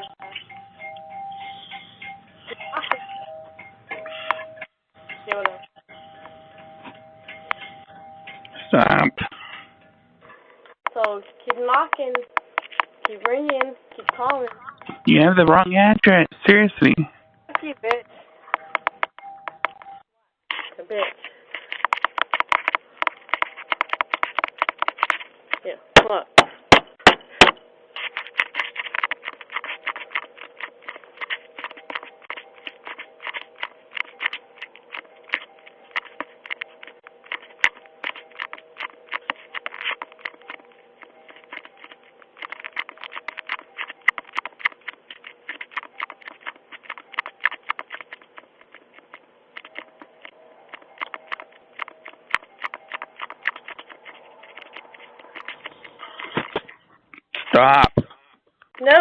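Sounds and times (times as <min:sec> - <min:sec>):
dense tapping and clicking: 0:21.6 - 0:55.7.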